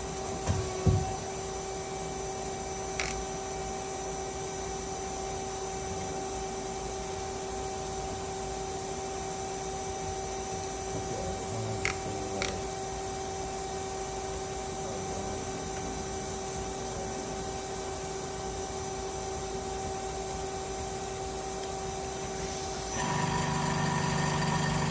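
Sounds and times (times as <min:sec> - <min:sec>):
machine shop equipment humming: 0:00.0 - 0:24.9
soft knocks: 0:00.4 - 0:01.2.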